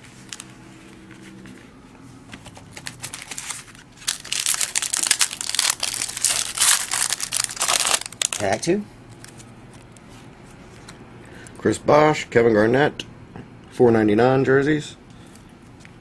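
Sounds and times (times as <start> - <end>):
wrapper crinkling and tearing: 2.7 - 8.6.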